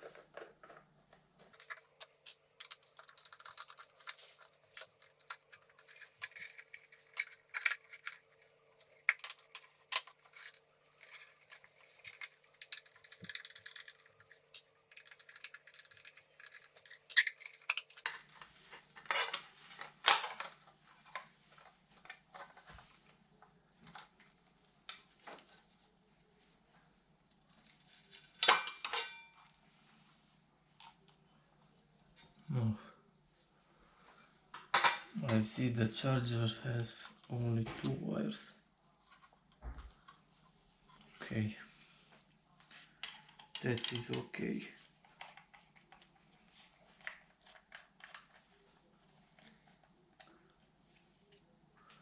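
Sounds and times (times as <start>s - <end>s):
tools clicking and clinking: 1.6s - 18.1s.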